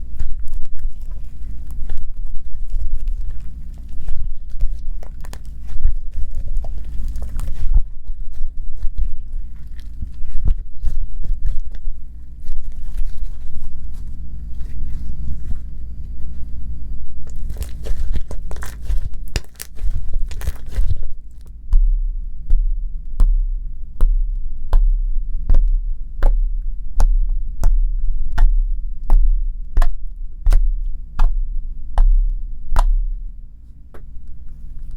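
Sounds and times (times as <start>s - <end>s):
slime squished by hand: 0.0s - 21.6s
sticky pops: 17.3s - 21.5s.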